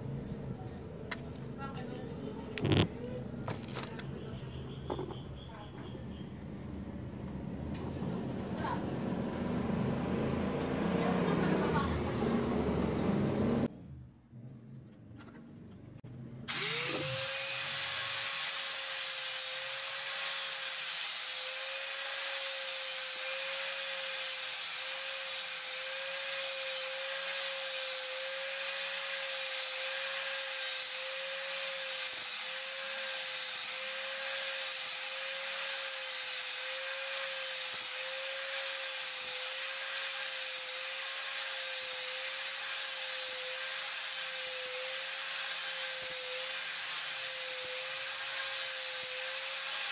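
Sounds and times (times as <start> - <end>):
power tool whining: 16.5 - 49.9.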